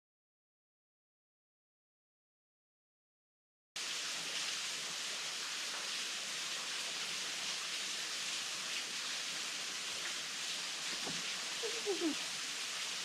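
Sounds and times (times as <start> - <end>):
small waterfall hissing: 3.8 - 13.0.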